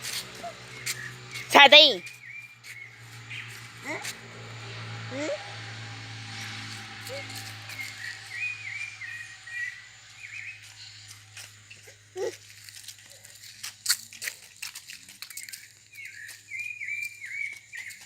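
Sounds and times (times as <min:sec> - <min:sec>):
short chirping calls: 0:07.1 - 0:11.1.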